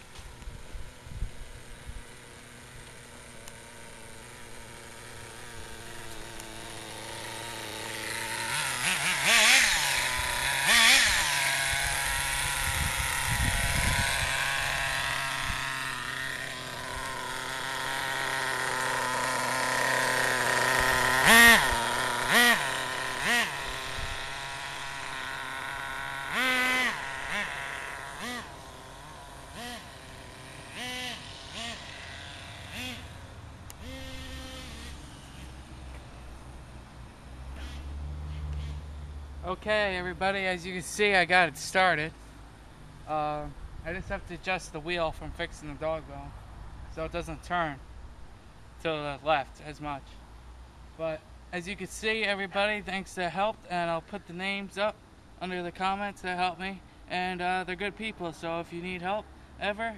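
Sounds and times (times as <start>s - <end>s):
rc nitro engine revving: 0.0s - 42.1s.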